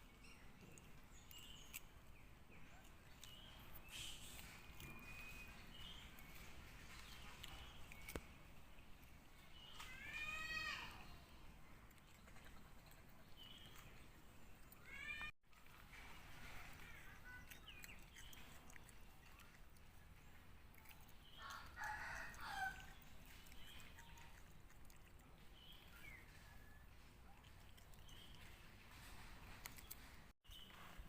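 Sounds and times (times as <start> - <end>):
bird chirps and calls: 0.1 - 8.4, 16.4 - 24.6
faint rooster crowing: 21.4 - 22.9.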